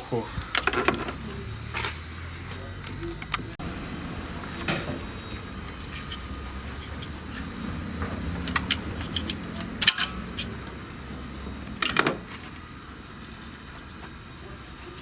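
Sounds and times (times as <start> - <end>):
metal tools clinking: 4.6 - 10.7, 11.8 - 12.2.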